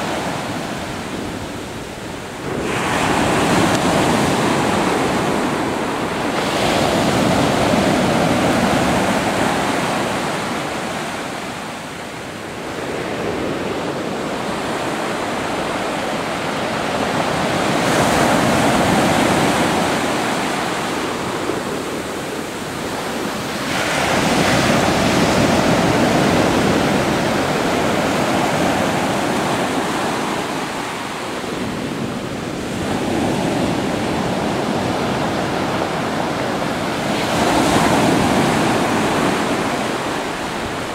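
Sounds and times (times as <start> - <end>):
ocean waves breaking on shore: 0.0 - 40.9
wind noise on microphone: 0.0 - 40.9.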